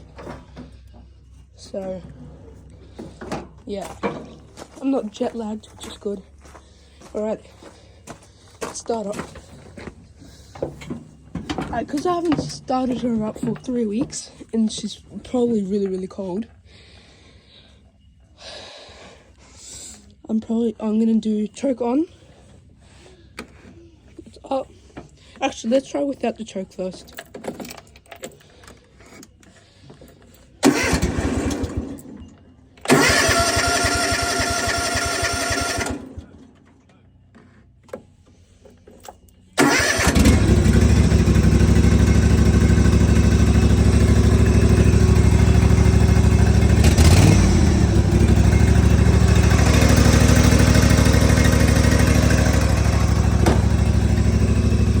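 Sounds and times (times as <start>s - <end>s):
mower engine running: 30.6s - 32.2s, 32.8s - 36.4s, 39.6s - 55.0s
starter cranking engine: 30.6s - 32.2s, 32.8s - 36.4s, 39.6s - 55.0s.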